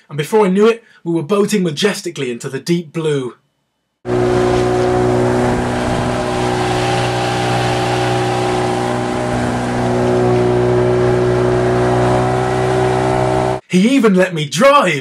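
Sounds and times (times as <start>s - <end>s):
rushing water and wind: 4.1s - 13.3s
boat motor droning: 4.1s - 13.6s.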